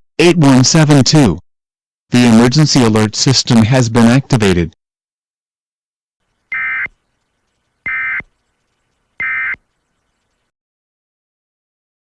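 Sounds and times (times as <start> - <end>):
buzzing alert beeps: 6.5 - 7.0, 7.9 - 8.3, 9.2 - 9.6.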